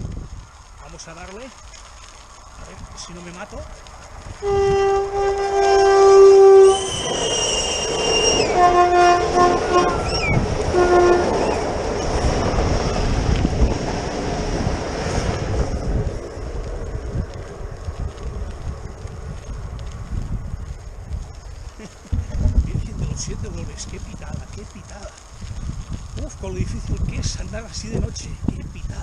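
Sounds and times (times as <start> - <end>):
train horn blasts: 4.4 - 10.1, 10.7 - 11.6
train rumble and clickety-clack: 4.4 - 20.4.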